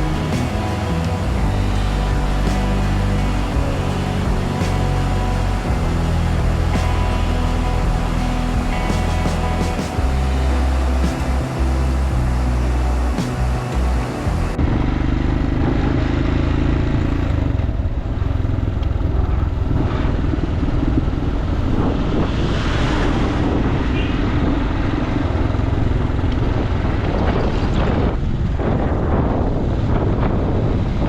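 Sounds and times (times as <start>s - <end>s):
motorcycle engine running: 0.0s - 22.0s
wind buffeting microphone: 19.0s - 31.0s.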